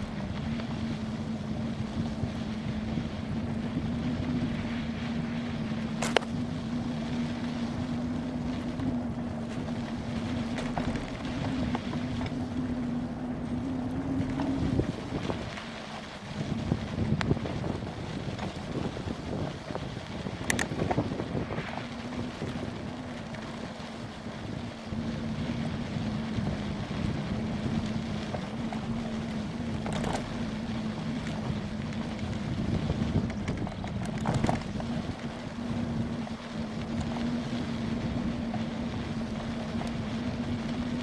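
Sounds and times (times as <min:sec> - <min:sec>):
steady low hum: 0:00.0 - 0:41.0
wind buffeting microphone: 0:00.0 - 0:41.0.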